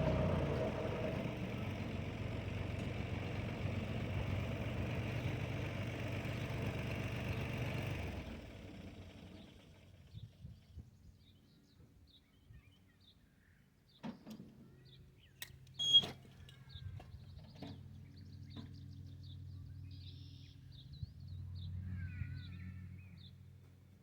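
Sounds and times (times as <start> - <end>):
tractor engine idling: 0.0 - 10.4
small birds chirping: 4.1 - 7.8, 9.3 - 23.5.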